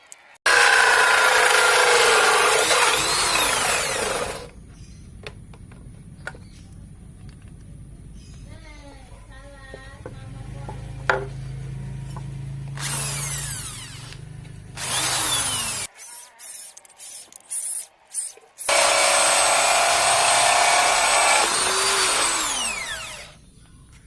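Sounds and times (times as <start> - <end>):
electric power tool cutting wood: 0.5 - 4.5, 12.8 - 14.2, 14.8 - 15.9, 18.6 - 23.4
motor whine spinning down: 18.7 - 23.4.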